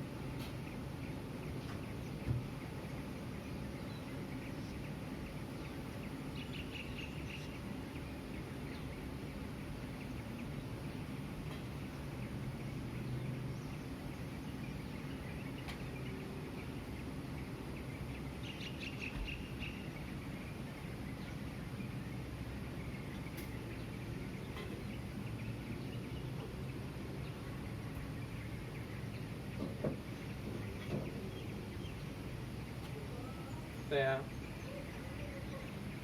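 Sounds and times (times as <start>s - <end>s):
distant traffic hum: 0.0s - 36.0s
small birds chirping: 0.0s - 36.0s.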